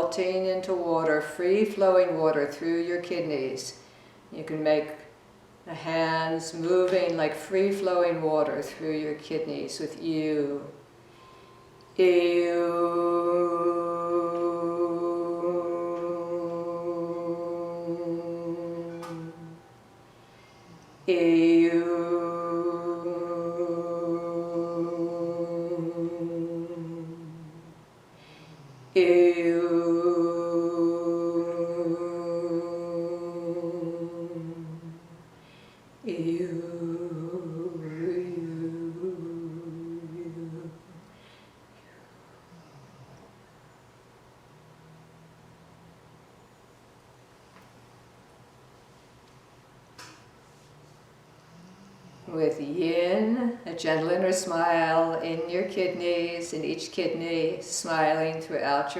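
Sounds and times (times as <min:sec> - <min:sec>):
steady low drone: 0:11.9 - 0:47.0
woman holding long oo vowel: 0:12.1 - 0:41.2.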